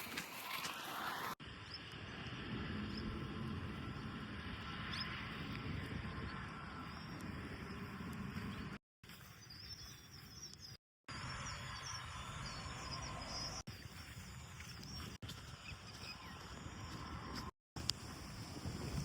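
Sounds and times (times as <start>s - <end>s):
steady low rumble: 1.4s - 8.8s
birds chirping: 4.6s - 17.3s.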